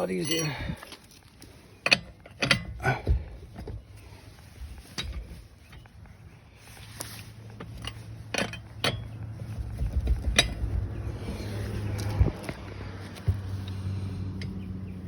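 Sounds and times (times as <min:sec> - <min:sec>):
lug wrench clinking on lug nuts: 0:00.0 - 0:03.8, 0:07.6 - 0:11.4, 0:13.2 - 0:14.8.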